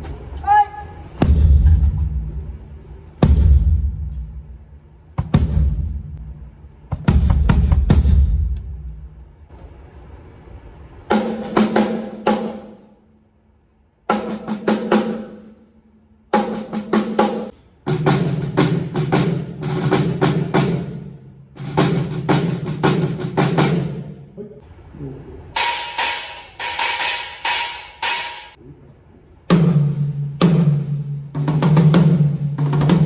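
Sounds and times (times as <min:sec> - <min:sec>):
drum fills and rolls: 0:01.2 - 0:09.4, 0:10.9 - 0:12.8, 0:16.4 - 0:24.3, 0:29.5 - 0:33.0
cymbals: 0:25.4 - 0:28.6.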